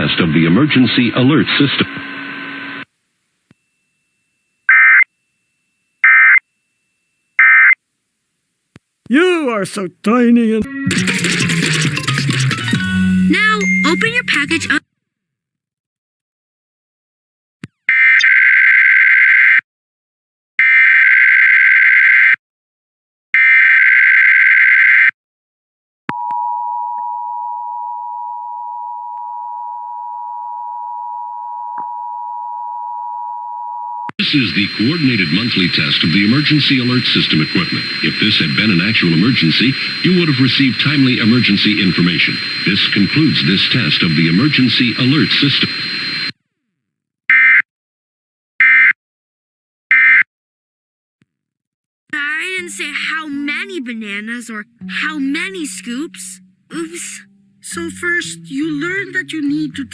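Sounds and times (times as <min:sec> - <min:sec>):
buzzy two-tone digital data bursts: 0:10.6 - 0:14.8, 0:34.6 - 0:46.3
screeching digital data tones: 0:10.6 - 0:14.8
two-tone alert signal: 0:10.6 - 0:14.8.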